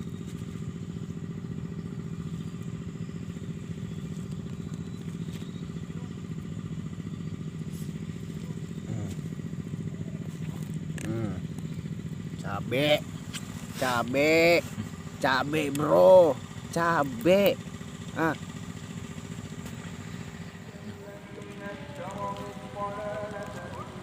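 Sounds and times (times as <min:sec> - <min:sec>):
small engine chugging: 0:00.0 - 0:24.0.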